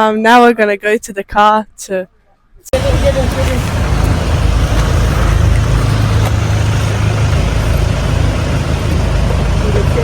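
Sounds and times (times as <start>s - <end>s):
car engine rumble: 2.7s - 10.0s
road noise: 2.7s - 10.0s.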